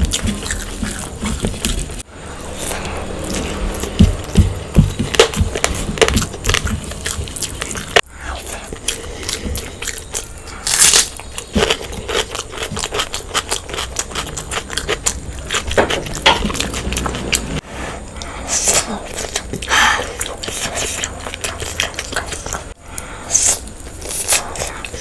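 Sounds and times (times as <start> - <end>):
sharp crackles and smacks: 0.0 - 8.0
person chewing and crunching food: 0.0 - 25.0.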